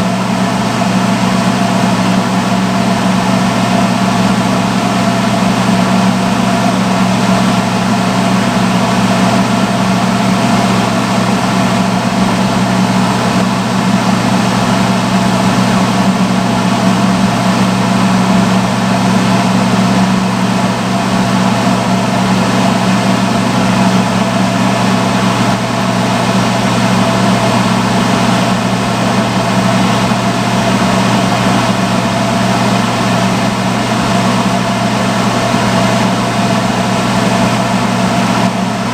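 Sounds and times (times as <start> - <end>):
hood hair dryer blowing: 0.0 - 38.9.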